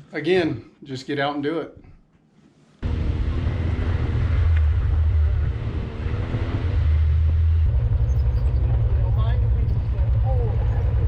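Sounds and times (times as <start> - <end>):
utv engine running: 2.8 - 11.0.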